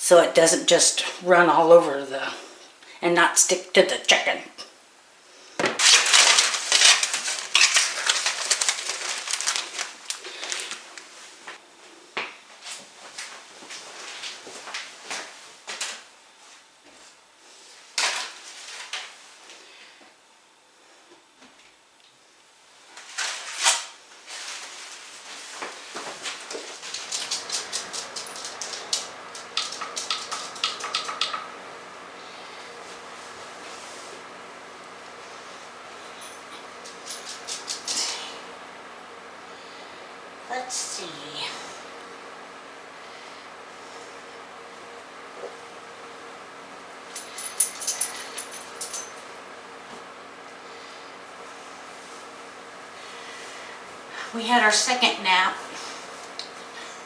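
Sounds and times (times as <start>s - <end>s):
dishes and utensils clattering: 27.1s - 31.5s.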